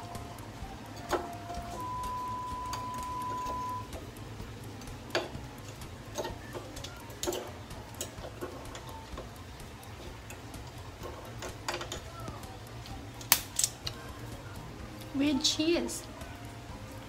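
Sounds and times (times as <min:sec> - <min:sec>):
steady high tone: 0:00.0 - 0:04.1
hard objects clicking and tapping: 0:00.9 - 0:14.0.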